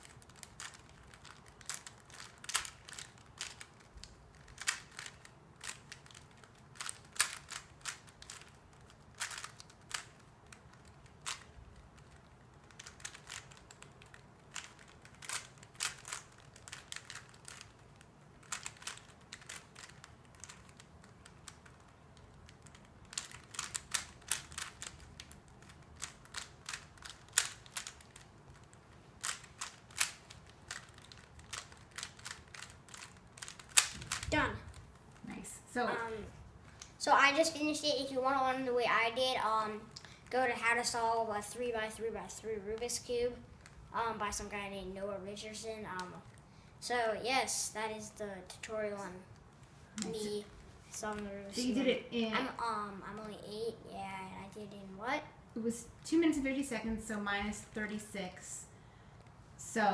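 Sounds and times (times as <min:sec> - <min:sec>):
puzzle cube layers clicking: 0:00.0 - 0:34.8.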